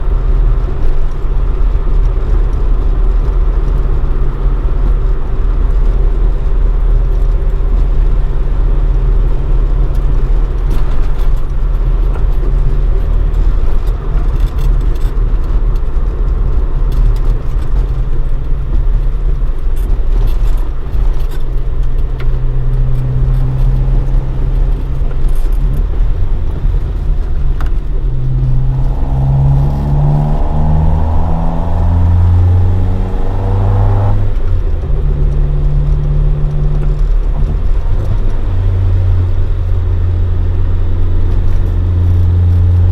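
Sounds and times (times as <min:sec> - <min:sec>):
car engine revving: 0:20.3 - 0:42.9.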